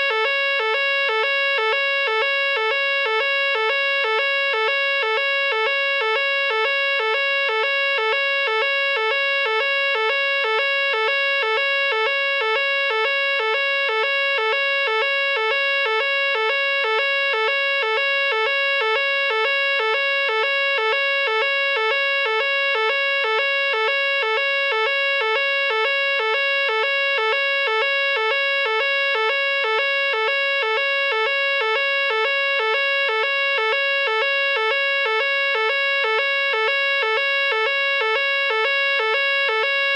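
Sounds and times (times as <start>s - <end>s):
two-tone fire alarm: 0.0s - 39.9s.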